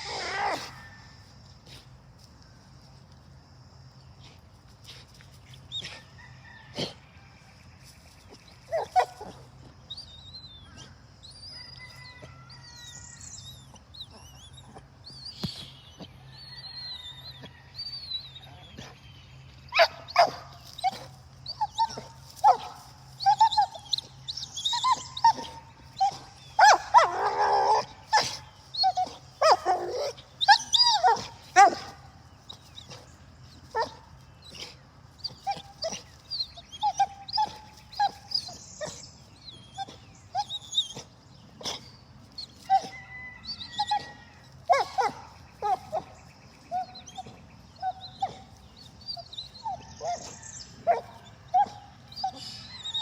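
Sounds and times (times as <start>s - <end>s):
dog whining: 0.0s - 0.9s, 19.7s - 31.9s, 34.5s - 41.8s, 42.5s - 43.0s, 43.6s - 46.0s, 46.7s - 53.0s
dog yipping and barking: 0.0s - 0.9s, 8.7s - 9.4s, 19.7s - 32.1s, 33.6s - 41.8s, 42.5s - 43.0s, 43.6s - 46.1s, 46.7s - 53.0s.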